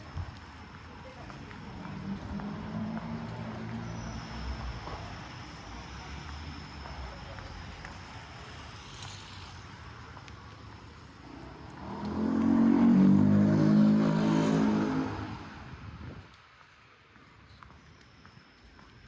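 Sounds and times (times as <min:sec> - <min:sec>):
car passing: 0:01.0 - 0:16.2.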